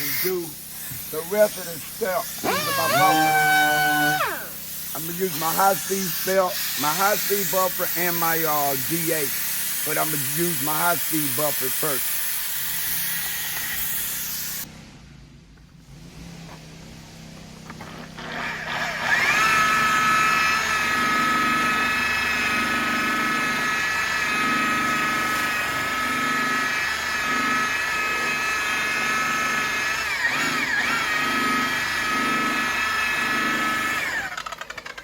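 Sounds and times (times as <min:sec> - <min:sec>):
rotary buffer whining: 0:00.0 - 0:06.5, 0:14.6 - 0:35.0
low pulsing hum: 0:14.6 - 0:20.1.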